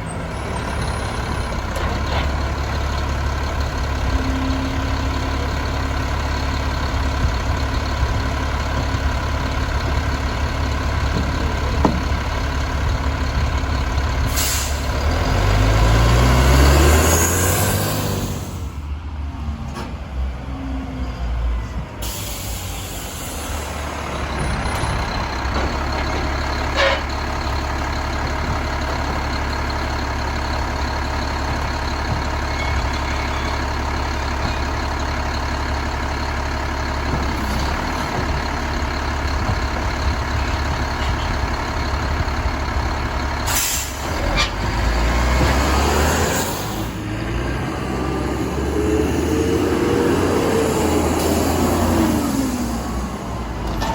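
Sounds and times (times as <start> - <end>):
diesel engine running: 0.0 - 53.9
air brakes hissing: 14.2 - 15.0, 22.0 - 23.9, 43.4 - 44.6.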